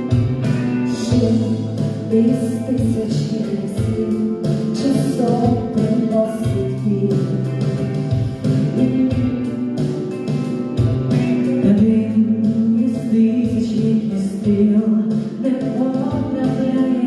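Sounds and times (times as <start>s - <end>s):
pop song with backing track: 0.0s - 17.0s
vocal trio singing: 0.9s - 9.6s.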